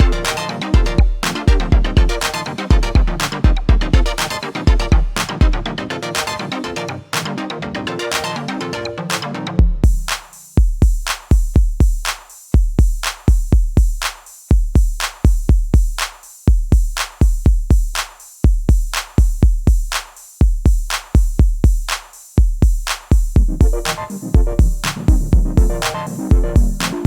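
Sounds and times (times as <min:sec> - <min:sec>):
electronic drum beat: 0:00.0 - 0:07.4, 0:08.1 - 0:08.5, 0:09.1 - 0:27.0.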